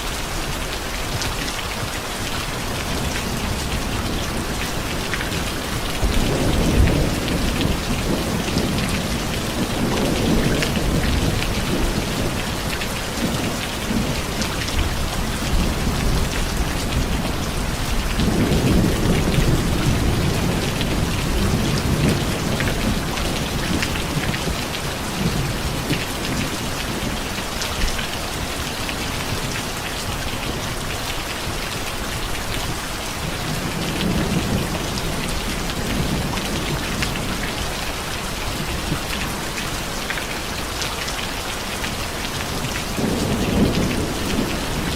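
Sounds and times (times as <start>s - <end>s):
heavy rain hissing: 0.0s - 44.9s
thunder rumbling: 2.5s - 30.8s, 42.5s - 44.9s.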